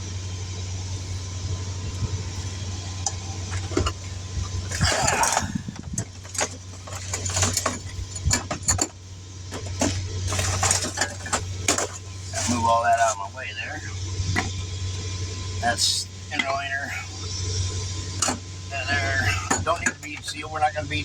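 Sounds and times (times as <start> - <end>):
vehicle engine idling: 0.0 - 21.0.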